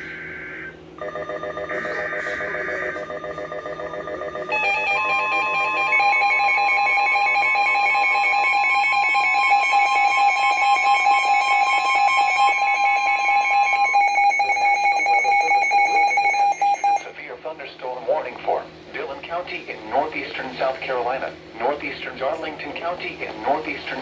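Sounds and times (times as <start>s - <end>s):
electronic alarm tone: 0.0s - 17.1s.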